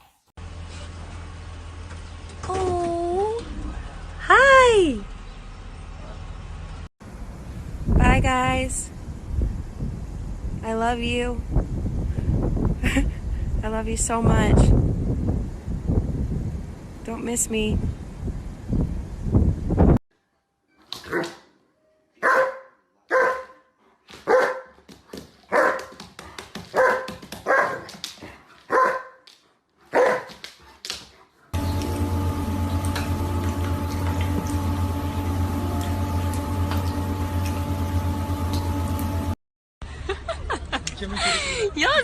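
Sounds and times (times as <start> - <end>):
dog barking: 22.2 - 24.8, 25.5 - 25.9, 26.7 - 27.9, 28.7 - 29.2, 29.9 - 30.4
droning hum with constant tones: 31.6 - 39.4.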